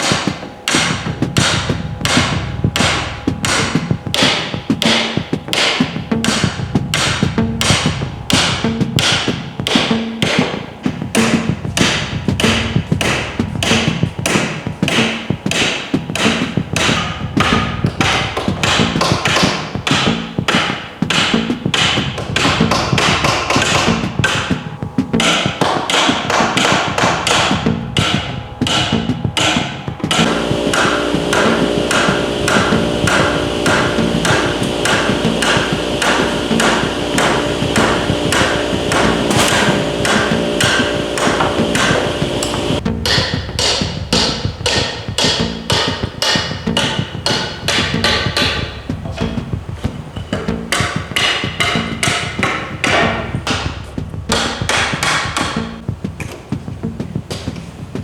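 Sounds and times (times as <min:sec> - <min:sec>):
hammer knocking on wood: 0:11.2 - 0:56.4
steady sustained tones: 0:23.3 - 0:54.6.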